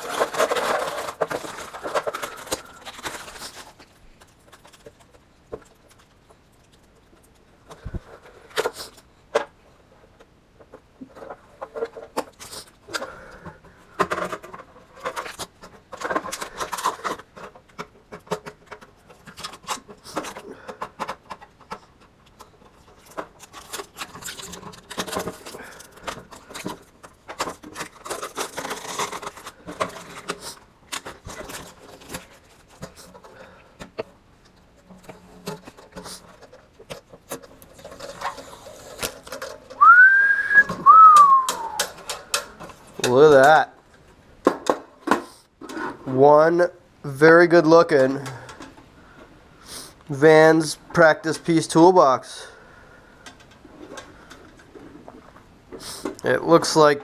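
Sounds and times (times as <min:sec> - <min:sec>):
plastic film peeling and crinkling: 0:00.0 - 0:09.2, 0:21.2 - 0:39.8
metal parts being handled: 0:00.0 - 0:09.4, 0:10.7 - 0:39.8.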